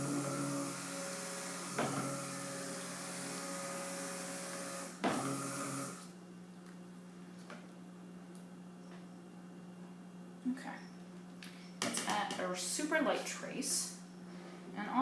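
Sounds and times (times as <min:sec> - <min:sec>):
stick blender motor running: 0:00.0 - 0:06.1.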